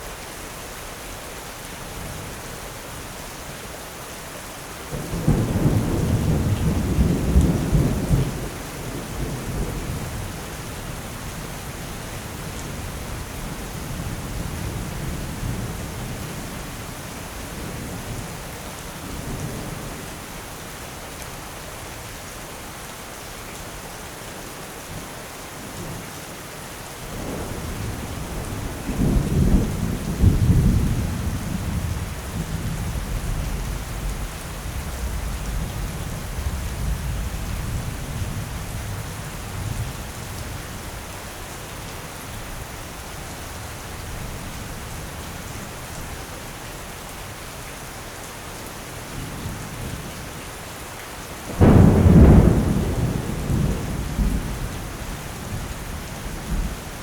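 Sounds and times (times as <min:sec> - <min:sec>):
heavy rain: 0:00.0 - 0:57.0
rolling thunder: 0:51.5 - 0:56.7.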